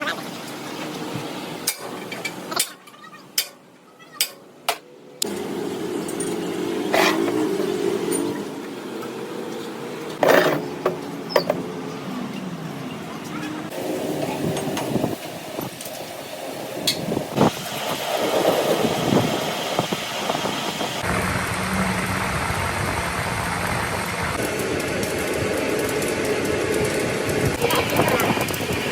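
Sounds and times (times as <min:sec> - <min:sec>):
workshop noise: 0:00.0 - 0:28.9
machine motor droning: 0:05.2 - 0:10.2, 0:21.0 - 0:28.9.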